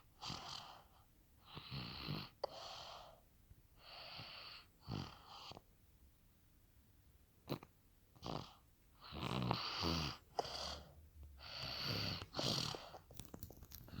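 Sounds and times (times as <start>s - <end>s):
baby snoring: 0.0s - 3.2s, 7.4s - 13.1s.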